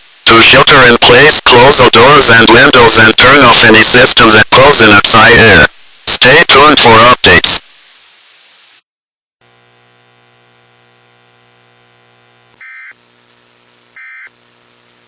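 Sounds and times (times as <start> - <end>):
faint static hiss: 0.0 - 8.8.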